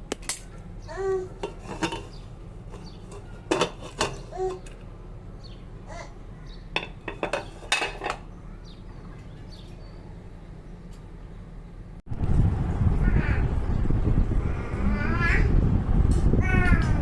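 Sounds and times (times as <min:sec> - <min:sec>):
metal utensils knocking on pots: 0:01.4 - 0:04.8, 0:06.8 - 0:08.2.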